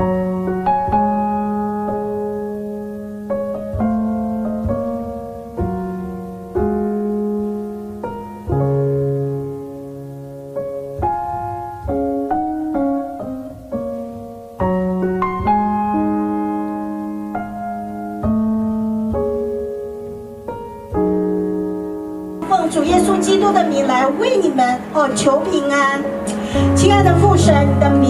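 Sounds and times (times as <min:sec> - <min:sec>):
slow gentle solo piano: 0:00.0 - 0:23.5.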